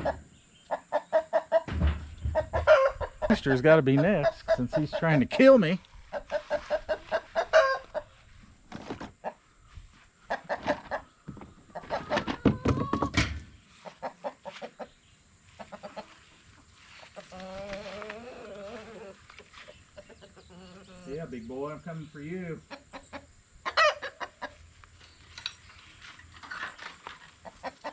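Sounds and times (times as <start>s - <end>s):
chickens clucking and squawking: 0.0s - 27.9s
scuffling: 1.7s - 14.7s, 15.5s - 19.9s.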